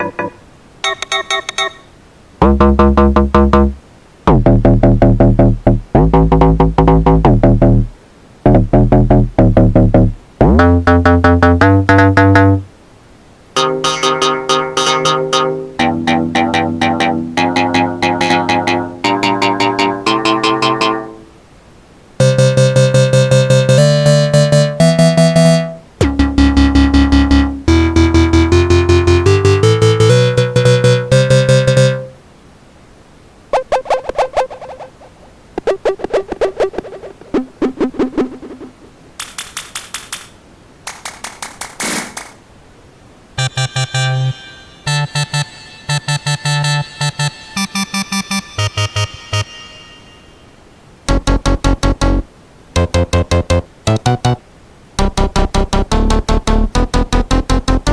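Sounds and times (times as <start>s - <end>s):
synth melody loops: 0.0s - 1.8s, 2.4s - 7.9s, 8.5s - 12.7s, 13.6s - 21.3s, 22.2s - 32.2s, 43.4s - 52.2s, 52.8s - 54.4s, 55.0s - 57.9s
plucked synth notes: 2.4s - 7.9s, 8.5s - 12.7s, 13.6s - 21.3s, 22.2s - 32.1s, 51.1s - 54.4s, 55.0s - 57.9s
high noise sweeps: 43.4s - 51.0s.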